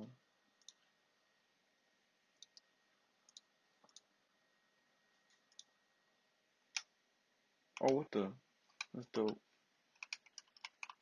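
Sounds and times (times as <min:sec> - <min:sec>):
computer mouse clicks: 0:00.6 - 0:00.9, 0:02.4 - 0:02.7, 0:03.3 - 0:04.1, 0:05.3 - 0:05.7, 0:06.7 - 0:06.9, 0:07.8 - 0:08.0, 0:08.7 - 0:11.0.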